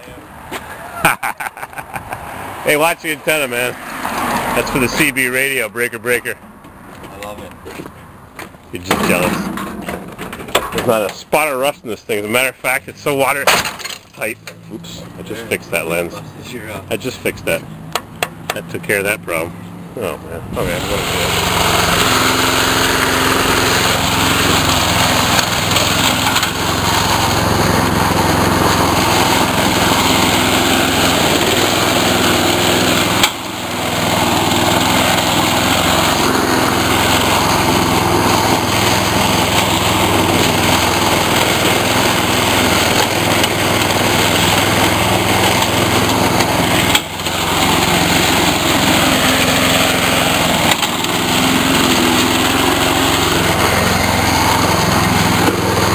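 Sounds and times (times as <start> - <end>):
chainsaw cutting: 20.6 - 55.9.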